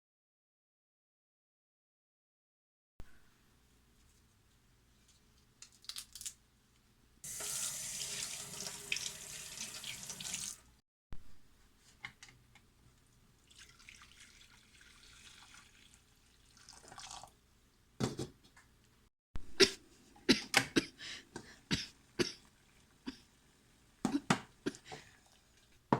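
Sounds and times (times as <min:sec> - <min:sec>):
tap water running into sink: 0:07.3 - 0:10.7.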